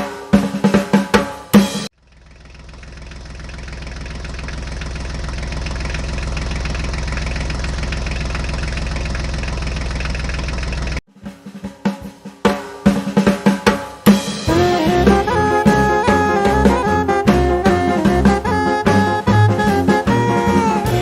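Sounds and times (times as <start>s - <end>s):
tractor engine idling: 1.9s - 11.0s.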